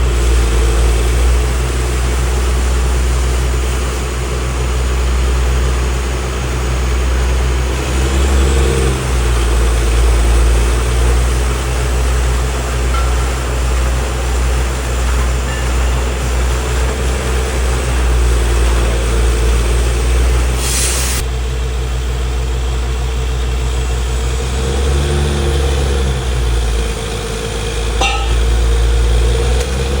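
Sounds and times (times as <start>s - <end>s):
drilling rig engine drone: 0.0s - 30.0s
short hiss: 20.6s - 21.2s.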